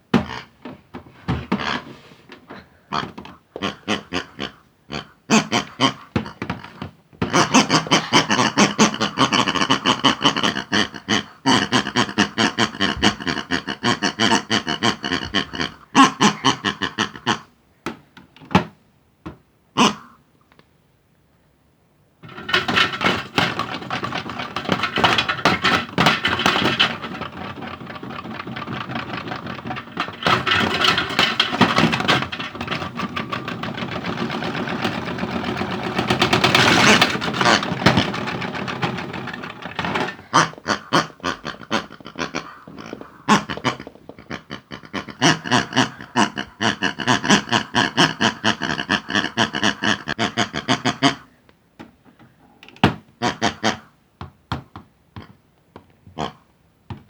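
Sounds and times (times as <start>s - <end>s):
objects rattling in drum: 22.2s - 49.4s.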